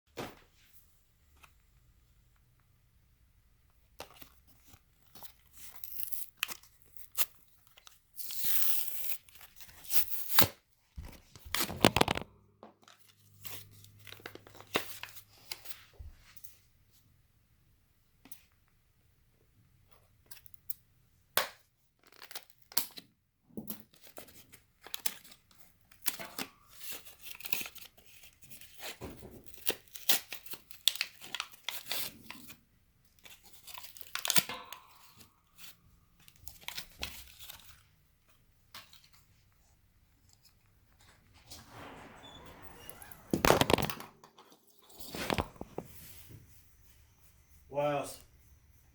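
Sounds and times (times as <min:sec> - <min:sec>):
plastic packaging ripping and crinkling: 0:05.2 - 0:12.3, 0:22.0 - 0:23.0, 0:42.0 - 0:44.1, 0:44.9 - 0:45.8.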